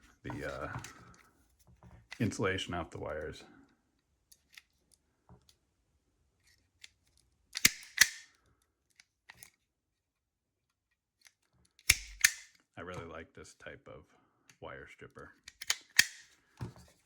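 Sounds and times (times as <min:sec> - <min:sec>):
handling clicks: 0:07.6 - 0:09.5, 0:11.3 - 0:12.6, 0:15.5 - 0:16.3
wire stripper snapping: 0:11.9 - 0:12.5.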